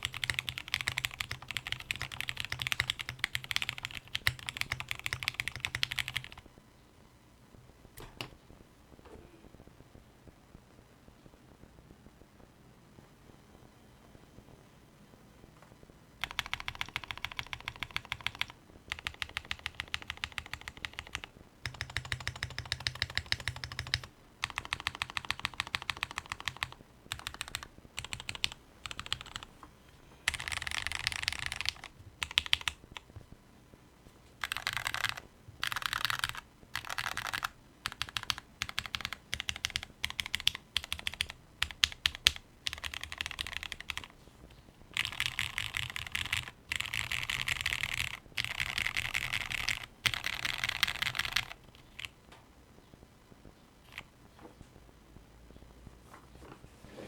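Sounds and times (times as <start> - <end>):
mechanical keyboard typing: 0.0 - 6.4, 16.2 - 29.5, 30.3 - 33.1, 34.4 - 44.2, 44.9 - 52.1.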